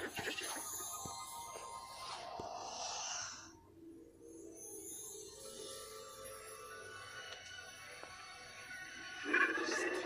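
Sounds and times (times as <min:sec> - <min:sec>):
faint background music: 0:00.0 - 0:10.0
soft breathy sound: 0:01.9 - 0:03.9.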